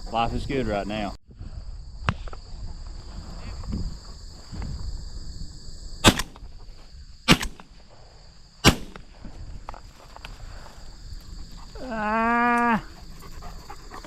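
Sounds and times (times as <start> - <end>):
crickets droning: 0.0 - 14.0
shotgun shots: 6.0 - 6.5, 7.3 - 7.8, 8.6 - 9.1.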